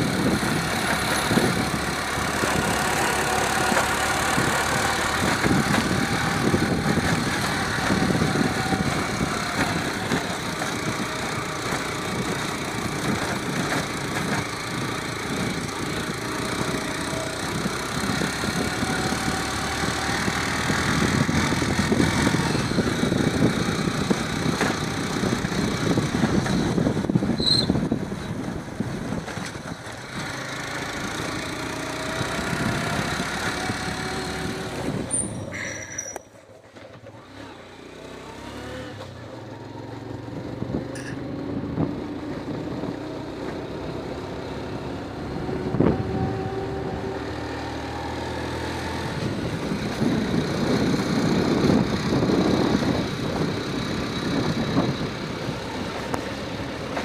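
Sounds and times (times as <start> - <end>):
vehicle engine and road noise: 0.0 - 57.0.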